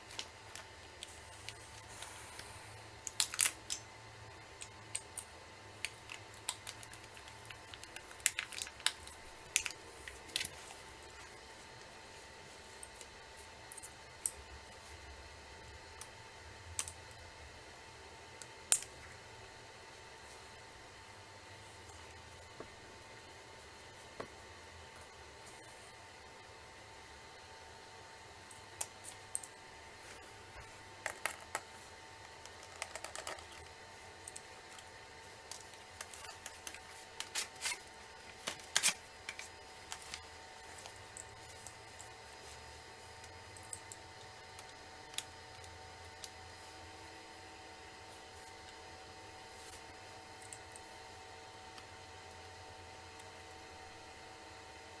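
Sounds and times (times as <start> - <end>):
faint steady hum: 0.0 - 55.0
small laptop parts clicking: 3.0 - 3.9, 4.5 - 10.6, 16.8 - 17.2, 31.0 - 40.2.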